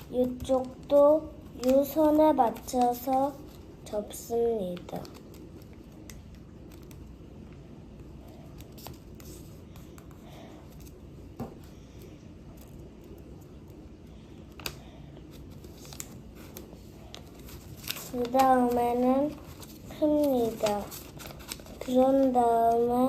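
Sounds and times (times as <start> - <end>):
paper rustling and crackling: 0.0 - 7.1, 8.3 - 11.0, 14.5 - 23.0
low steady hum: 0.0 - 23.0.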